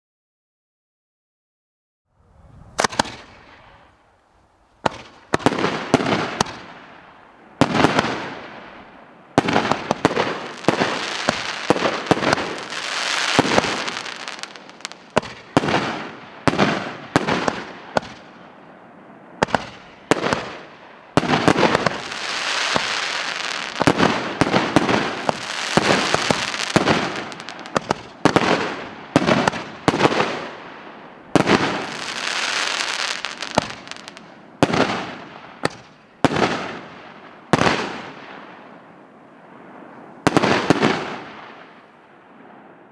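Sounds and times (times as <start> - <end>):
firework shells banging: 21.2 - 30.1.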